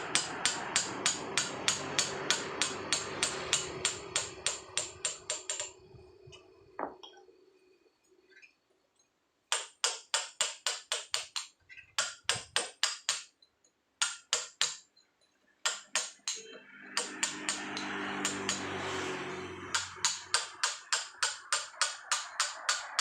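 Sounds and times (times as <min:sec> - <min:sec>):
hammer tapping chisel into stone: 0:00.1 - 0:05.8, 0:09.5 - 0:13.3, 0:14.0 - 0:14.9, 0:15.6 - 0:18.7, 0:19.7 - 0:23.0.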